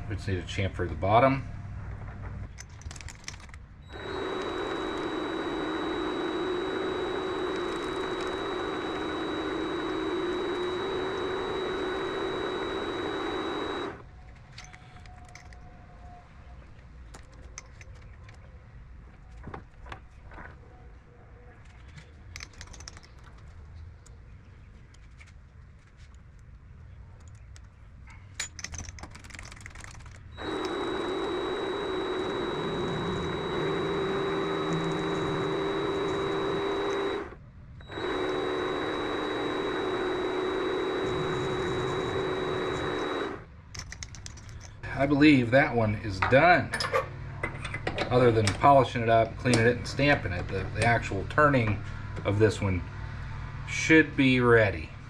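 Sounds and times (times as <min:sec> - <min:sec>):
lathe motor humming and whining: 0:03.9 - 0:14.0, 0:30.4 - 0:43.5
clicks and knocks of tools: 0:14.3 - 0:15.7, 0:43.7 - 0:44.8, 0:46.2 - 0:48.7.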